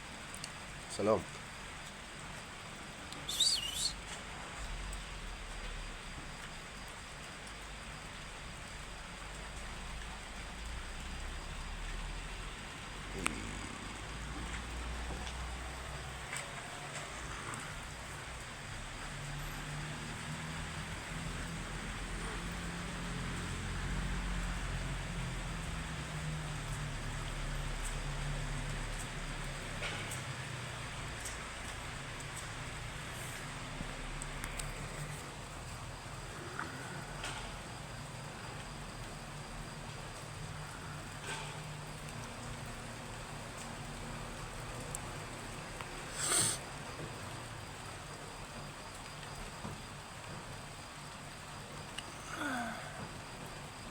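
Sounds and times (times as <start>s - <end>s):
rain hiss: 0.0s - 53.9s.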